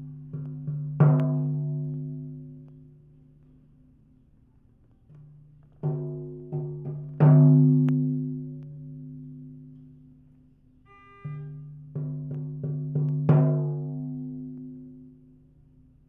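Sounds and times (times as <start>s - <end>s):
higher ringing note: 10.9s - 12.0s.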